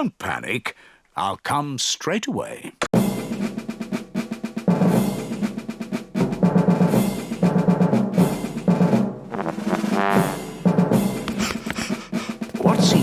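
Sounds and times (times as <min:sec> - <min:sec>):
rapid drum roll percussion: 0:03.0 - 0:13.0.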